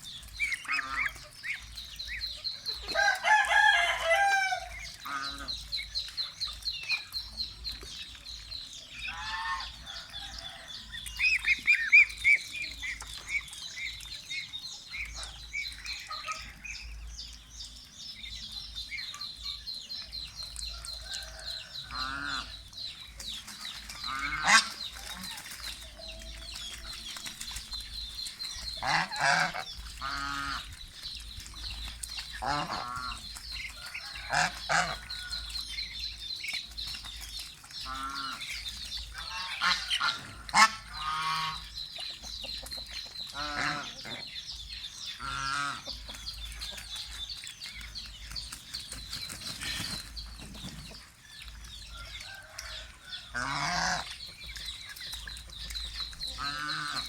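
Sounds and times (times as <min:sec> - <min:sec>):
geese honking: 0:00.0 - 0:01.6, 0:02.9 - 0:05.6, 0:09.0 - 0:09.9, 0:24.1 - 0:25.6, 0:28.7 - 0:30.7, 0:32.4 - 0:35.1, 0:39.2 - 0:41.7, 0:43.3 - 0:44.2, 0:45.2 - 0:46.0, 0:52.6 - 0:54.2.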